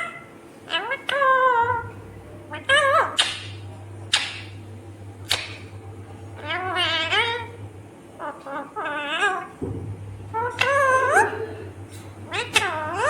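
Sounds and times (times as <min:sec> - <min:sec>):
parakeet squawking and warbling: 0:00.0 - 0:04.6, 0:06.4 - 0:07.6, 0:08.2 - 0:09.6, 0:10.3 - 0:13.0
steady low hum: 0:00.0 - 0:13.0.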